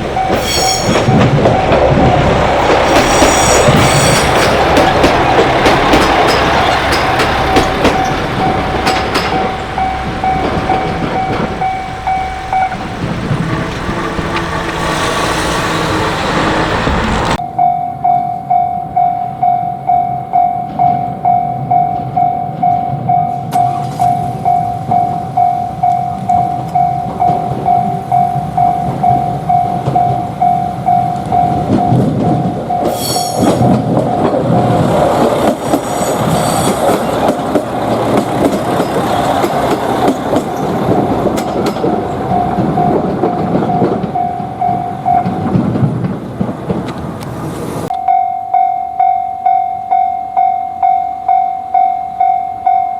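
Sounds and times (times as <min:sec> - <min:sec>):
train wheels rumbling on rails: 0:00.0 - 0:17.4, 0:20.6 - 0:48.1
level crossing bell clanging: 0:03.7 - 0:14.9, 0:47.9 - 0:52.9.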